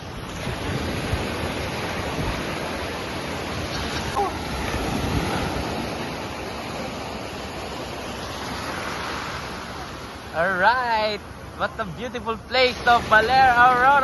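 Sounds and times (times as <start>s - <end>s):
wind on the microphone: 0.0s - 8.0s
waves breaking on a beach: 0.0s - 14.0s.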